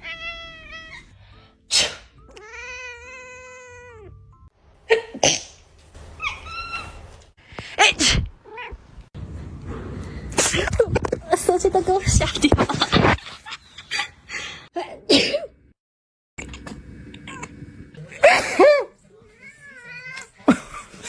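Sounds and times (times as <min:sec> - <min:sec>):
cat meowing: 0:00.0 - 0:01.1, 0:02.3 - 0:04.2
person sneezing: 0:01.7 - 0:02.1.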